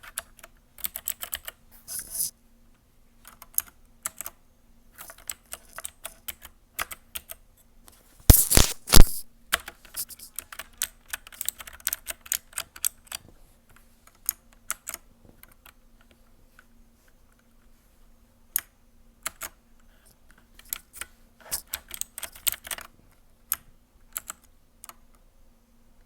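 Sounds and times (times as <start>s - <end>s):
mechanical keyboard clicking: 23.5s - 25.0s.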